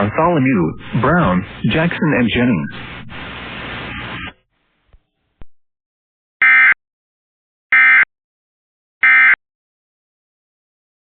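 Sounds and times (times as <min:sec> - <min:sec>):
steady hiss: 0:00.8 - 0:04.3.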